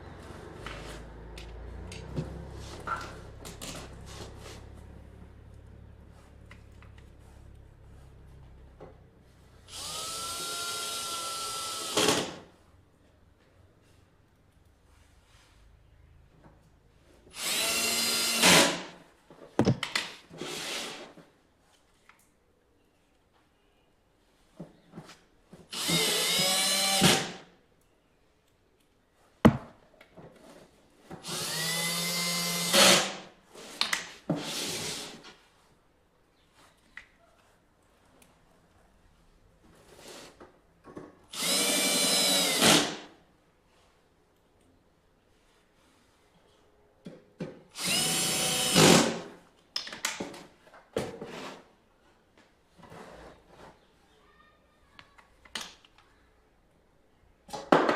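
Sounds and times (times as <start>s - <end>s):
power drill motor whine: 9.7s - 12.2s, 17.4s - 18.7s, 31.2s - 32.9s, 41.3s - 42.8s, 47.8s - 49.0s
sharp knocks and clicks: 19.6s - 20.1s.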